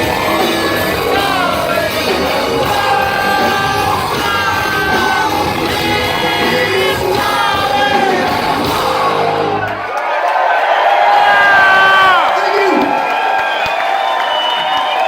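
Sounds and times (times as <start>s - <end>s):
live rock band with vocals: 0.0s - 9.8s
crowd cheering: 0.0s - 15.0s.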